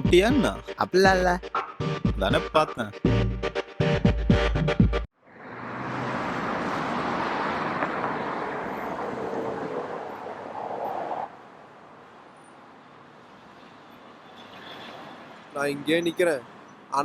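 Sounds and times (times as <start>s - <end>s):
rushing road noise: 5.1s - 17.0s.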